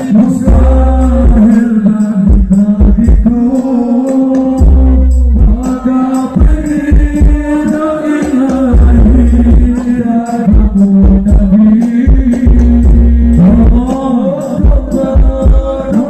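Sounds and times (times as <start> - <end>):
devotional singing with music: 0.0 - 16.0
heavy deep bass hits: 0.5 - 1.6, 4.6 - 7.6, 8.5 - 15.8.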